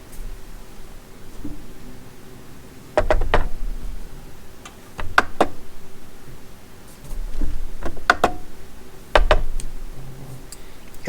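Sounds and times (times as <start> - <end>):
hard objects clicking and knocking: 3.0 - 4.0, 4.6 - 6.0, 7.1 - 10.0.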